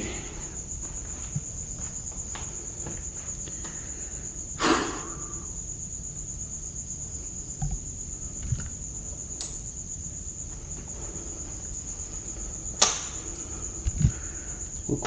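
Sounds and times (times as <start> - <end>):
crickets chirping: 0.0 - 15.0
soft thumps: 13.8 - 14.2.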